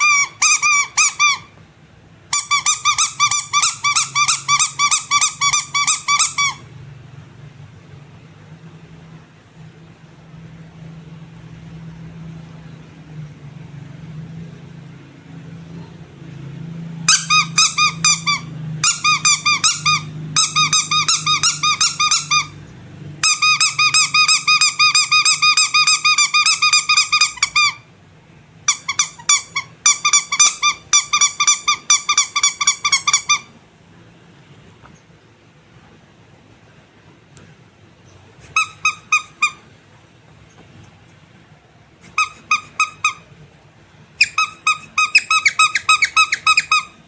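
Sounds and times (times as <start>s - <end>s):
squeaky rubber toy squeaking: 0.0s - 1.6s, 2.3s - 6.8s, 17.0s - 27.9s, 28.6s - 33.6s, 38.4s - 39.7s, 42.0s - 43.3s, 44.2s - 47.0s
faint low hum: 0.0s - 47.0s.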